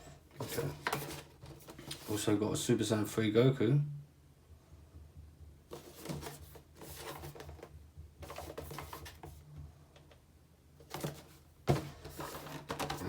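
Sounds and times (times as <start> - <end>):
plastic and cardboard packaging crinkling: 5.7 - 9.4, 10.8 - 13.0.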